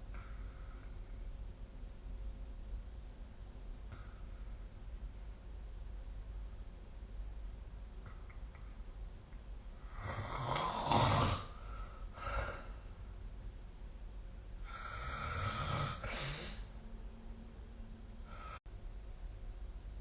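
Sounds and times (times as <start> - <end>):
person snoring: 9.9 - 11.6, 14.6 - 16.7.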